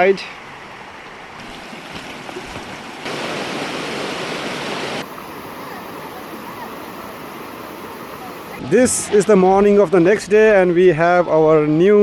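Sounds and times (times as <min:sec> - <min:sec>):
river rushing over stones: 0:01.4 - 0:08.6.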